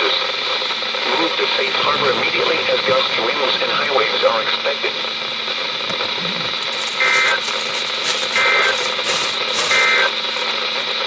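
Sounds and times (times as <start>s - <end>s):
radio static: 0.0s - 11.0s
two-tone digital bursts: 7.0s - 7.4s, 8.4s - 8.8s.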